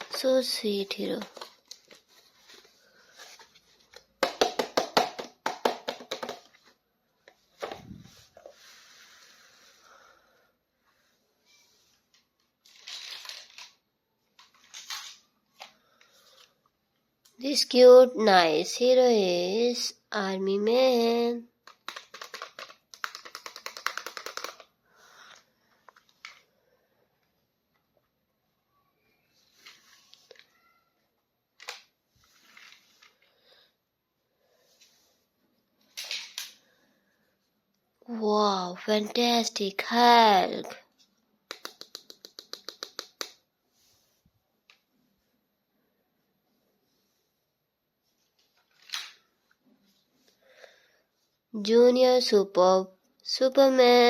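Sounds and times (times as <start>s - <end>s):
soft rustle: 7.9s - 10.0s.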